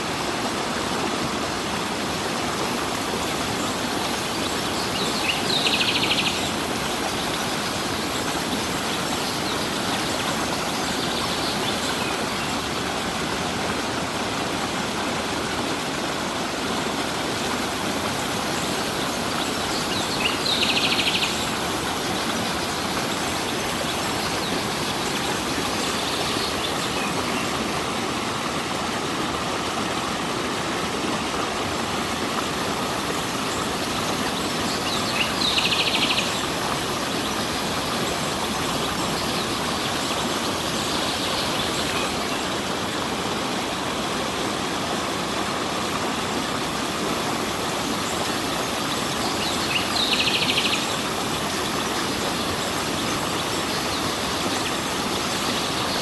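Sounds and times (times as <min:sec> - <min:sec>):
stream flowing: 0:00.0 - 0:56.0.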